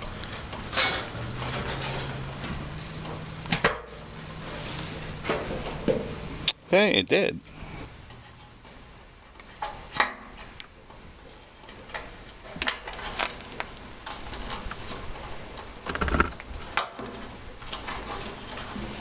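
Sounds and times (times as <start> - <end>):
crickets chirping: 0.0 - 19.0
thud with short rattle: 15.9 - 16.4.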